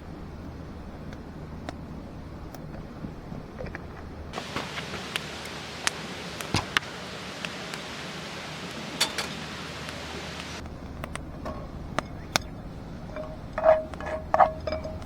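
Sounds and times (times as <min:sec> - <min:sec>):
steady hiss: 0:00.0 - 0:15.0
metal cookware clinking: 0:08.9 - 0:09.9, 0:10.9 - 0:15.0.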